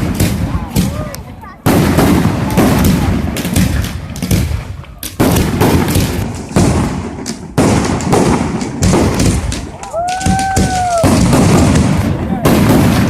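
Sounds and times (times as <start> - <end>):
fireworks bangs with crackle: 0.0 - 13.0.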